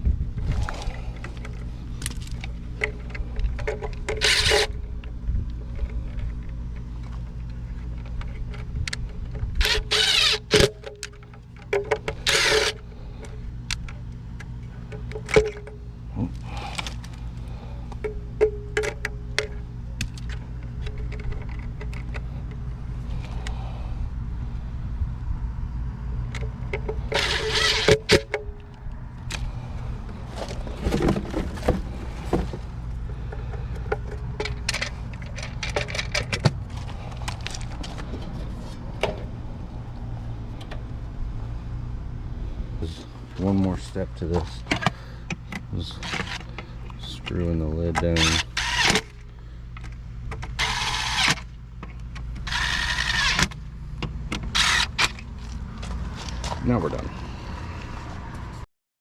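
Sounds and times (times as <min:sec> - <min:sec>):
steady low hum: 0:00.0 - 0:58.6
tools clicking and rattling: 0:00.6 - 0:17.2, 0:17.9 - 0:22.6, 0:26.3 - 0:29.5, 0:30.4 - 0:38.3, 0:43.8 - 0:56.6.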